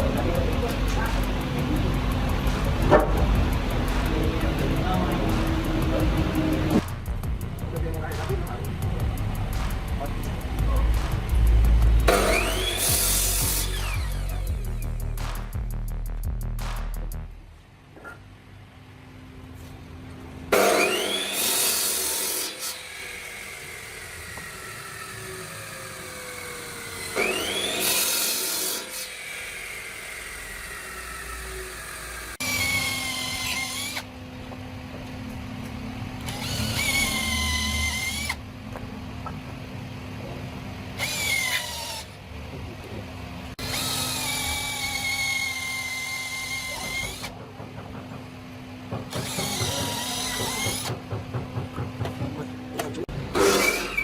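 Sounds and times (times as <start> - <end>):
drill motor whining in bursts: 0.0 - 15.2, 20.5 - 38.6, 40.8 - 42.3, 43.5 - 47.5, 48.7 - 51.2, 53.1 - 54.0
power tool spinning up and down: 12.0 - 15.4, 20.5 - 38.5, 40.8 - 42.3, 43.1 - 47.4, 49.0 - 51.1, 53.1 - 54.0.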